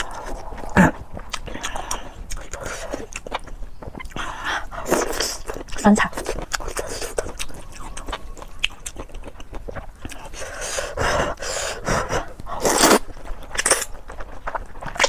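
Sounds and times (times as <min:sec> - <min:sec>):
chewing with wet clicks: 0:00.0 - 0:15.0
noodle slurping: 0:09.8 - 0:14.0.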